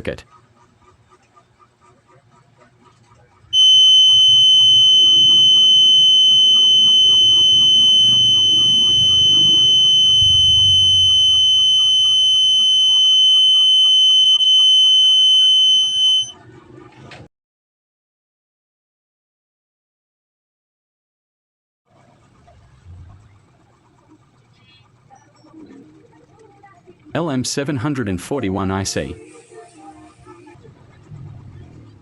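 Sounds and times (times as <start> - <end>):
high-pitched alarm buzzer: 3.6 - 16.4.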